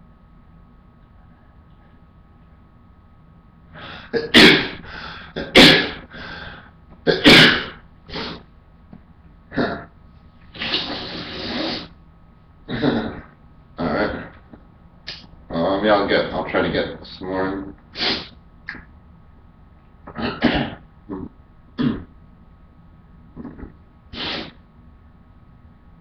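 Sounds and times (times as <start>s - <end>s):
breathy exhale: 3.8s - 5.4s, 6.0s - 6.8s
man sneezing: 4.1s - 6.1s, 7.1s - 8.4s, 24.2s - 24.6s.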